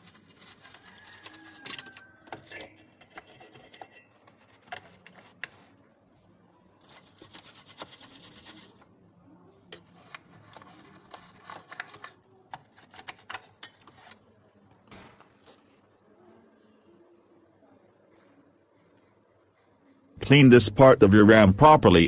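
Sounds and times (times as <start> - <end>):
brush scratching and rubbing: 0.0 - 5.8, 6.8 - 8.8.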